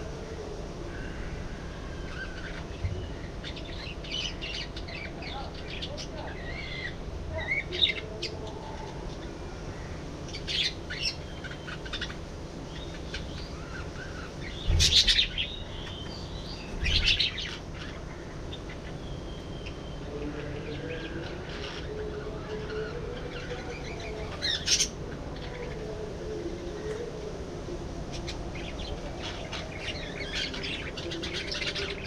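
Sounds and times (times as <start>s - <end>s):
budgerigars chirping: 9.8s - 20.0s.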